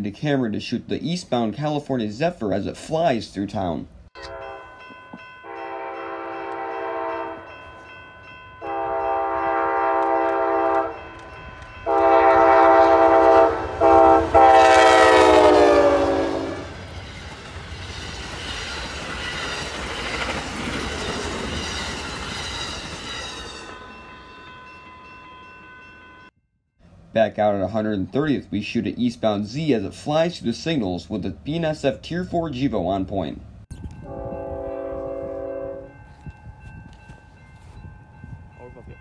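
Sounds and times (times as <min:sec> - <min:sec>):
train horn blasts: 0:04.2 - 0:04.7, 0:05.4 - 0:07.6, 0:08.6 - 0:16.7, 0:34.0 - 0:36.0
train cars clattering on rails: 0:16.8 - 0:24.7.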